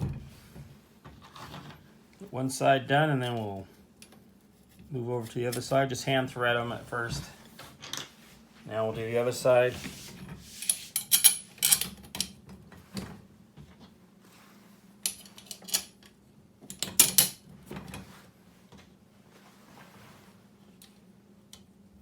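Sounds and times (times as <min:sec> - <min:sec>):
metal parts clinking: 0:10.6 - 0:12.0, 0:15.1 - 0:16.0.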